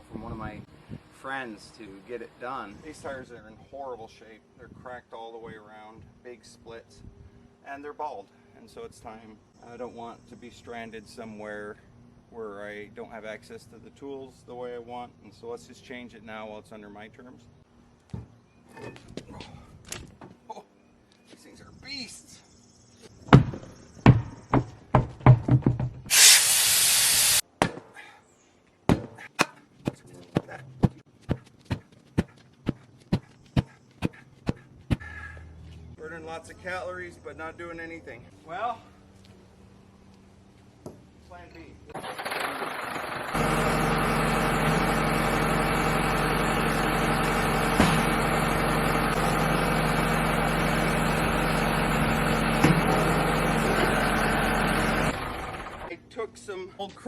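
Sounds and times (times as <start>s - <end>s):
hissing burst: 26.1s - 27.4s
backhoe engine idling: 42.0s - 55.9s.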